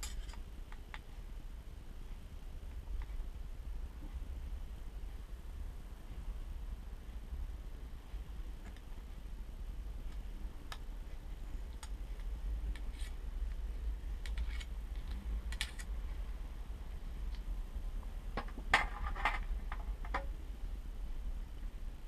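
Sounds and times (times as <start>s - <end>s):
metal tools clicking and clinking: 0.0s - 0.4s
steady low hum: 0.0s - 22.0s.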